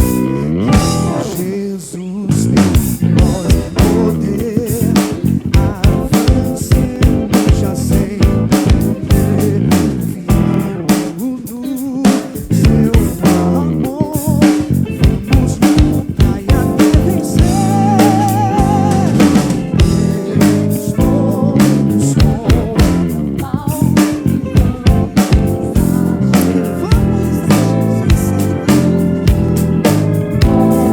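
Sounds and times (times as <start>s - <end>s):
drum kit beat: 0.0s - 1.6s, 2.3s - 30.9s
bass guitar: 0.0s - 30.9s
electric guitar: 0.0s - 30.9s
person singing: 0.0s - 30.9s.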